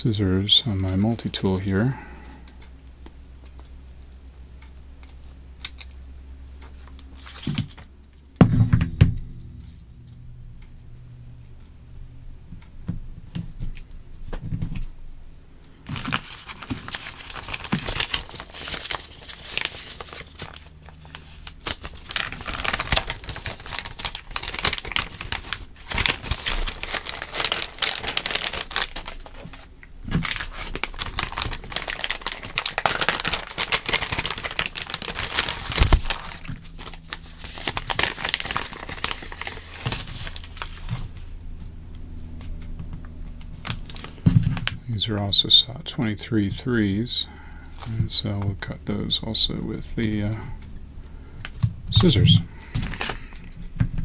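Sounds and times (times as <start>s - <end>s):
plastic tape crinkling: 0.1s - 14.9s, 15.6s - 46.6s, 47.3s - 50.8s, 51.4s - 54.0s
loud knock: 8.4s - 9.9s.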